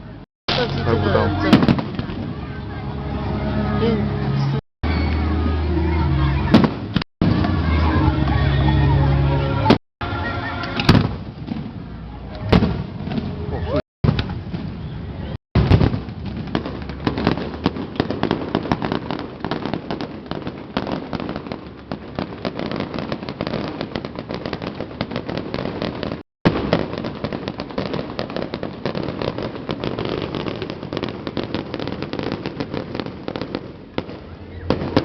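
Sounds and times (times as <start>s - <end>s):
fireworks pops and crackling: 0.5s - 2.5s, 6.5s - 7.7s, 10.7s - 13.4s, 14.0s - 15.0s, 15.6s - 35.0s.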